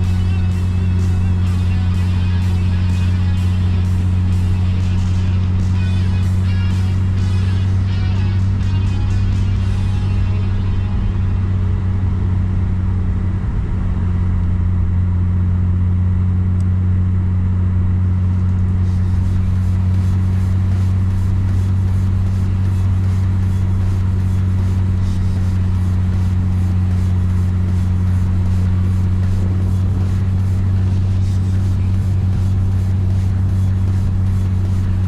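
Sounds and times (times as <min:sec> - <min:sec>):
car engine and road noise: 0:00.0 - 0:35.0
rapid regular ticking: 0:18.2 - 0:35.0.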